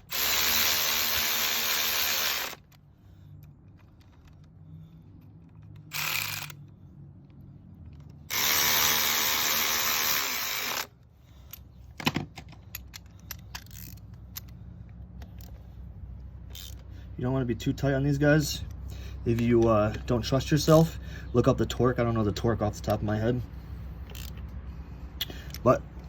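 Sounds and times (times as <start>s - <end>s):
cordless drill spinning bolts: 0.0s - 2.8s, 5.6s - 6.7s, 8.1s - 10.9s, 24.0s - 24.4s
tool handling clicks and knocks: 2.5s - 8.3s, 11.3s - 16.9s, 24.0s - 24.6s.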